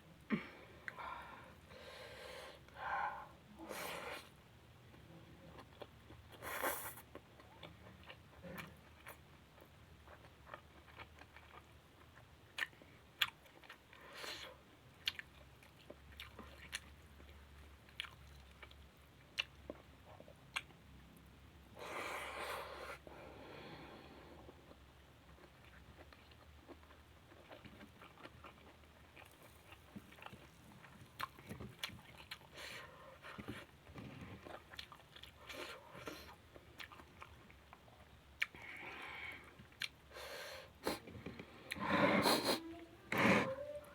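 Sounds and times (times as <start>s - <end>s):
close chewing and mouth sounds: 3.7s - 43.9s.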